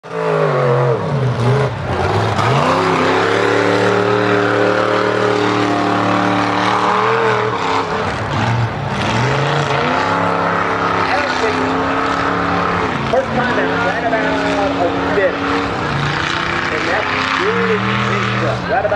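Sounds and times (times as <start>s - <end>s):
truck engine revving: 0.0s - 18.9s.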